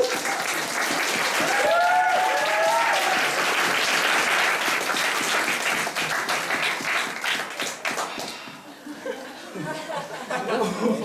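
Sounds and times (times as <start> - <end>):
audience applauding: 0.0 - 8.6
voices cheering: 1.2 - 3.6.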